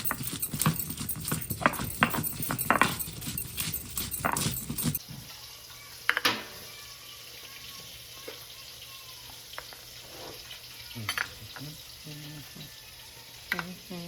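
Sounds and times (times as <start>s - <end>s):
kitchen clicks and knocks: 0.0s - 5.0s.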